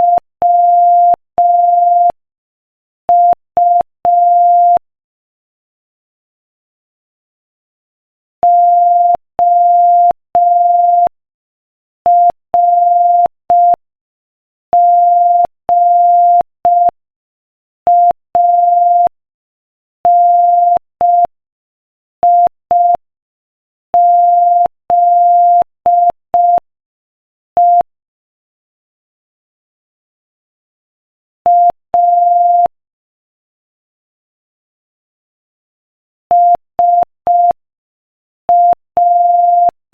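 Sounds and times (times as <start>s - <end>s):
morse code beeps: 17.9s - 19.1s, 22.3s - 23.0s, 24.0s - 26.6s, 27.6s - 27.8s, 31.5s - 32.7s, 36.3s - 37.6s, 38.5s - 39.8s.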